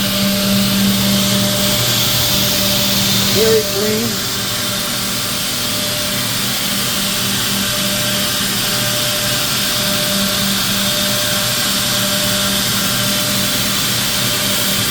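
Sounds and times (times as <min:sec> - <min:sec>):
airy hiss: 0:00.0 - 0:04.8
machine motor hum: 0:00.0 - 0:14.9.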